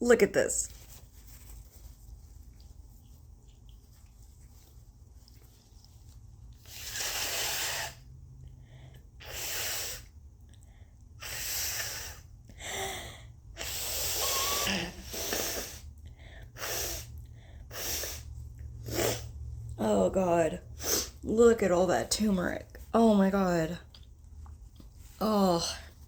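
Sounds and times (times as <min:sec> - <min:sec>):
person breathing heavily: 0:06.7 - 0:19.3.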